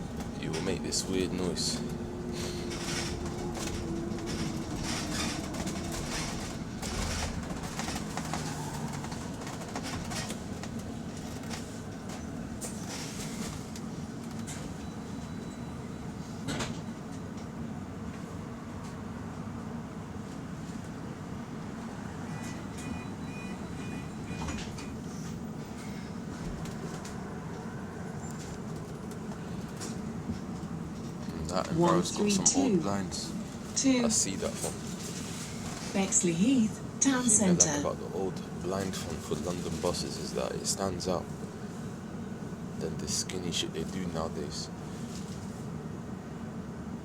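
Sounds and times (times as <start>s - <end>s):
electric bus hum: 0.0s - 47.0s
road rumble: 0.0s - 47.0s.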